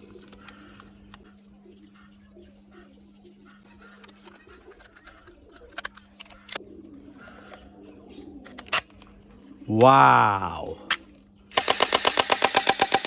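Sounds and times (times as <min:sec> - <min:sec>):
plastic toy pistol clicks: 0:11.6 - 0:13.0.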